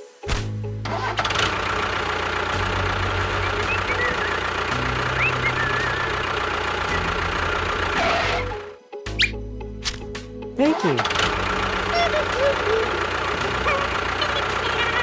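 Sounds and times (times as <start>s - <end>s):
small engine idling: 0.9s - 8.8s, 11.0s - 15.0s.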